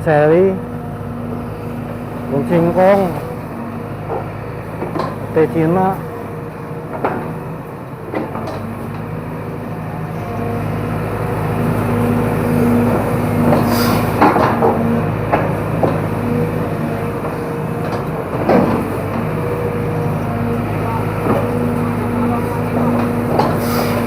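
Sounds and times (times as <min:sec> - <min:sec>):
excavator diesel engine running: 0:00.0 - 0:24.0
sharp knocks and cracks: 0:04.0 - 0:05.6, 0:06.8 - 0:09.1, 0:12.8 - 0:16.4, 0:17.2 - 0:19.7, 0:21.1 - 0:24.0.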